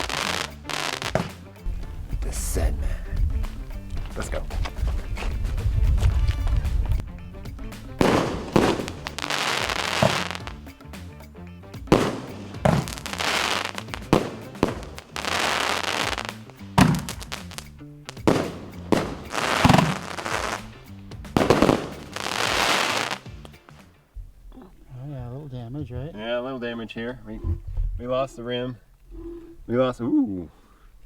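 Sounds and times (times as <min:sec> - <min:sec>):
firework mortar bangs: 0:00.0 - 0:10.7, 0:11.9 - 0:23.8
hissing crackle: 0:00.0 - 0:11.0, 0:11.9 - 0:23.9.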